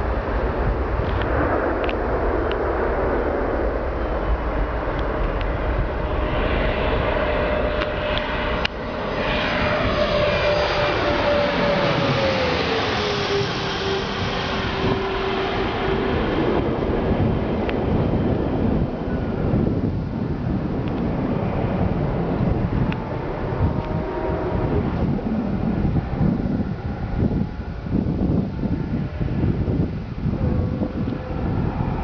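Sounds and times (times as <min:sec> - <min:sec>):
jet aircraft flying overhead: 0:00.0 - 0:32.0.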